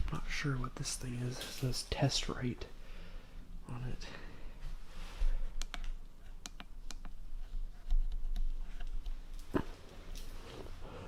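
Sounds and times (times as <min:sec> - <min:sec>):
sharp clicks and ticks: 0:05.6 - 0:07.2.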